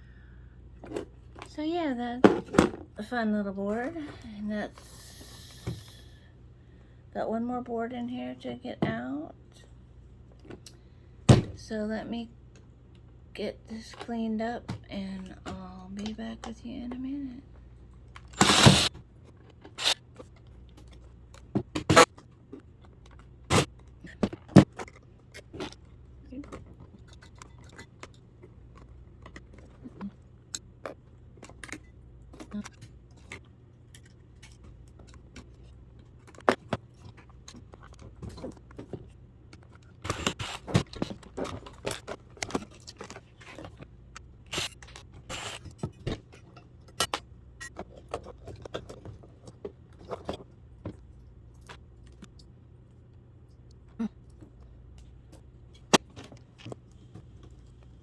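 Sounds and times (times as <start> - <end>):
metal and plastic scrap clinking: 18.2 - 22.2.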